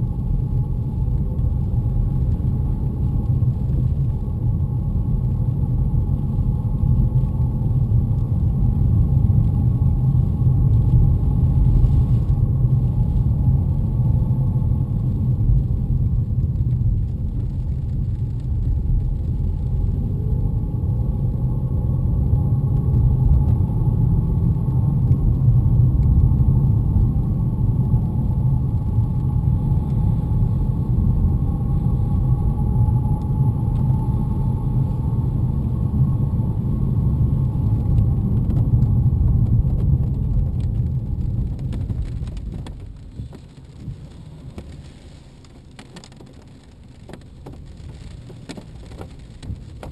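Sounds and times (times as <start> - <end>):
car road and engine rumble: 0.0 - 49.9.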